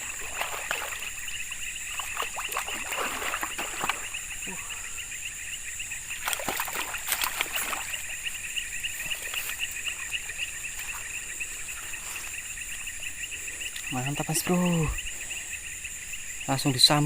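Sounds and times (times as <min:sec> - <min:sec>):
water splashing: 0:00.0 - 0:04.9, 0:06.0 - 0:15.0
insect chorus buzzing: 0:00.0 - 0:17.0.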